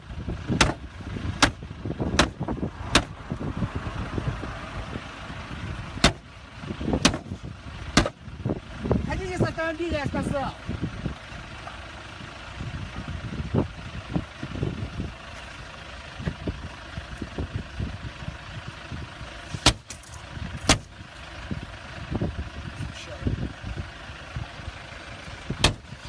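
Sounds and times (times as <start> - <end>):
car engine idling: 0.0 - 26.0.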